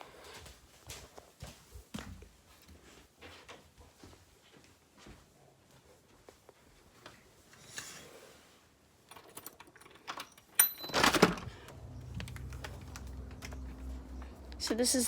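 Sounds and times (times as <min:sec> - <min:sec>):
small clicks and rattles: 0:09.0 - 0:15.0
door opening clatter: 0:09.2 - 0:15.0
low hum and rumble: 0:11.6 - 0:14.8.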